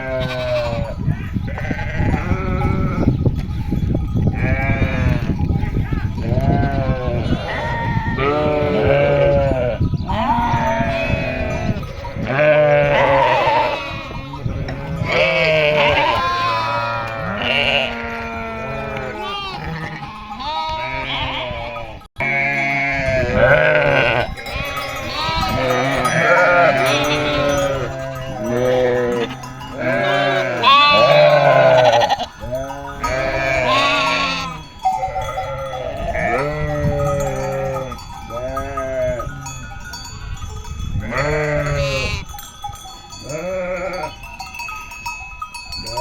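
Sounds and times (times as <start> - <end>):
sheep bleating: 0.0 - 3.1, 4.4 - 5.4, 6.2 - 39.6, 41.1 - 42.3, 43.2 - 44.2
metal bells clinking: 0.8 - 6.8, 23.8 - 46.0.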